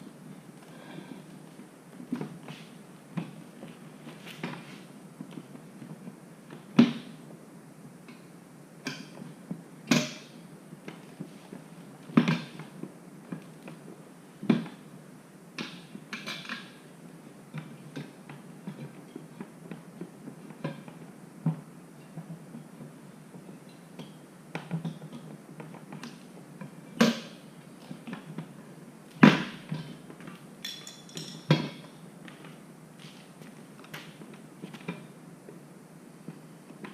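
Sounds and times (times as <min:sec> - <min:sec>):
tools clinking against wheel rim: 0:30.6 - 0:31.8.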